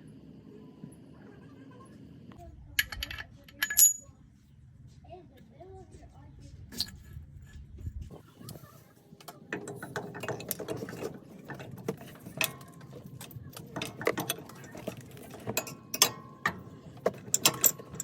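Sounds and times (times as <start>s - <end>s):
suspension creaking and clicking: 9.5s - 18.0s.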